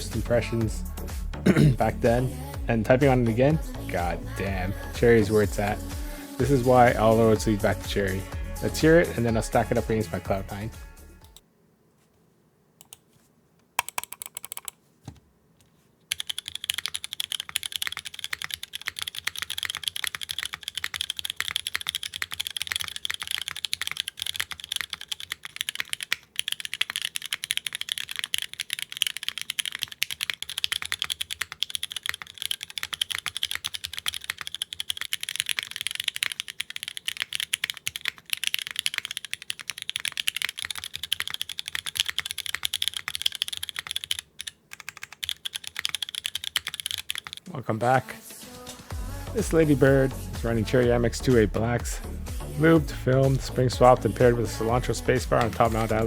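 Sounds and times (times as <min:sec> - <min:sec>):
mechanical keyboard typing: 0:13.8 - 0:14.8, 0:16.1 - 0:47.5, 0:55.0 - 0:56.0.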